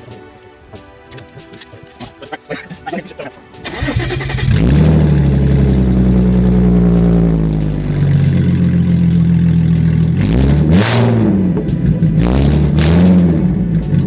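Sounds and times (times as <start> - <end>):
car engine starting and idling: 3.6 - 14.0.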